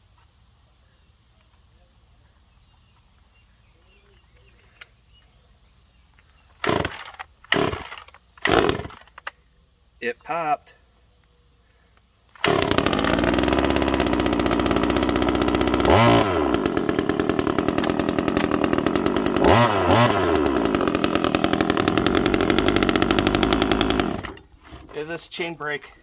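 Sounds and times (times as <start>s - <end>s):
chainsaw engine running: 6.4s - 9.4s, 12.4s - 25.2s.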